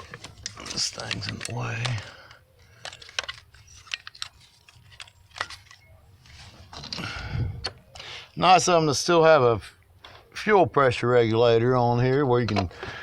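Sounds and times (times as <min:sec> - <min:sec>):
plastic parts clicking and tapping: 0:00.0 - 0:05.8, 0:12.4 - 0:13.0.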